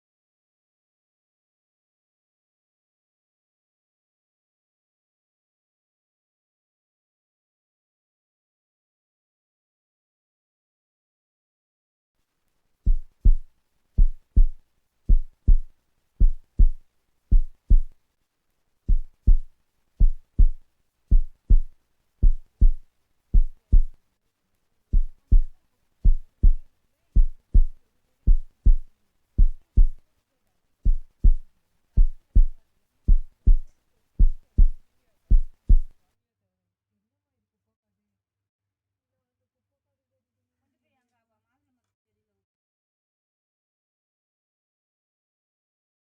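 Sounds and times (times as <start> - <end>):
heartbeat-like deep thumps: 12.9 - 18.0, 18.9 - 22.8, 23.4 - 24.0, 24.9 - 26.6, 27.2 - 30.0, 30.9 - 35.9.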